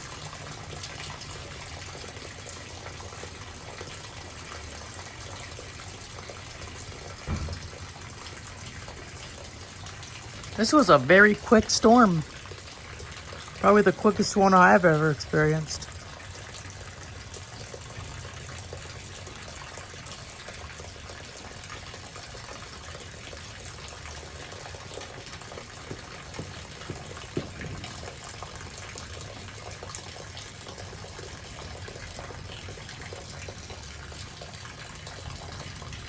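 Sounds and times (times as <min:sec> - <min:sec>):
rain: 0:00.0 - 0:36.0
running water: 0:00.0 - 0:36.0
faint taps: 0:25.8 - 0:28.0.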